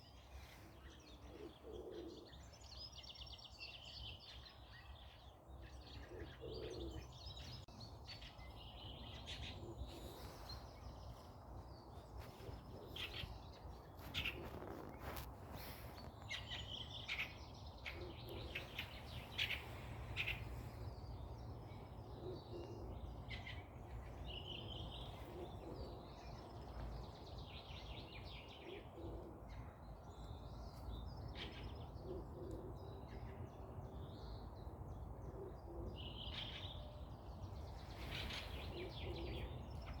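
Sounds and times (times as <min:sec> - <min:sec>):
forest birds chirping: 0:00.0 - 0:40.0.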